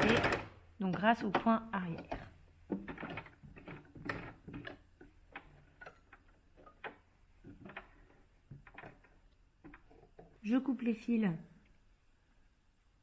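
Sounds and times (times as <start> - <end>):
sewing machine clicks and ticks: 0.0 - 2.2.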